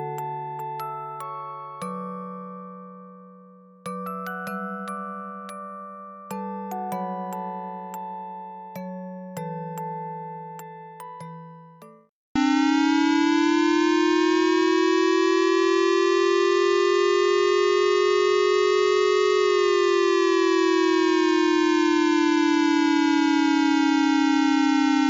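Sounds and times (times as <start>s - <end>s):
warning siren rising and falling: 12.4s - 25.0s.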